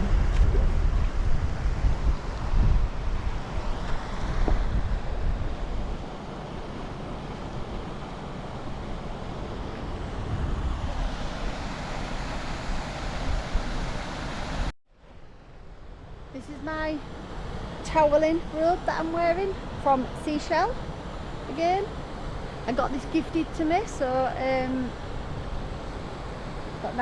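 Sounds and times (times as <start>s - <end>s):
water rushing: 0.0s - 14.7s
wind buffeting microphone: 0.0s - 14.7s.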